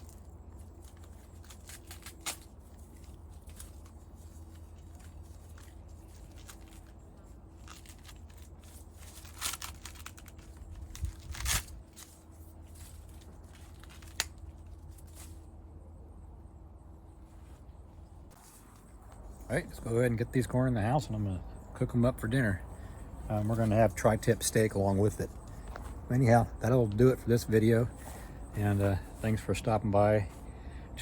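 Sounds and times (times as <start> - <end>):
corn plants rustling and tearing: 0.0 - 15.4
low hum: 0.0 - 31.0.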